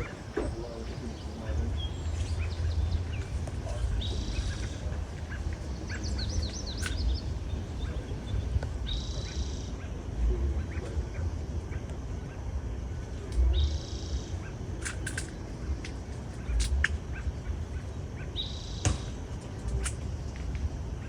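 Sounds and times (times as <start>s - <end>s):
birds chirping and calling: 0.0s - 12.4s, 13.4s - 20.0s
low steady rumble: 0.0s - 21.0s.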